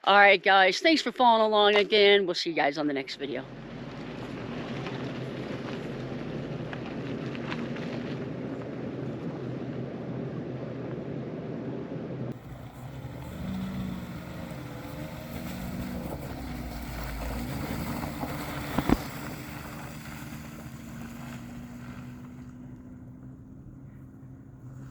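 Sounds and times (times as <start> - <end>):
vehicle engine running: 3.0 - 24.9
wind noise: 3.4 - 23.1.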